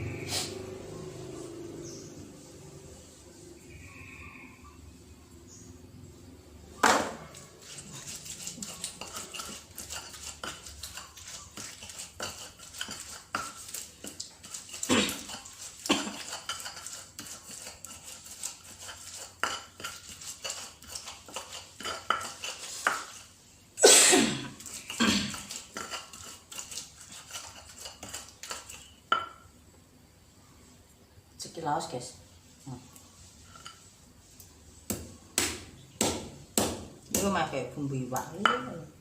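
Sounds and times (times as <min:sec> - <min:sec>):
stone pestle knocking in mortar: 0:34.9 - 0:37.4, 0:38.4 - 0:38.8.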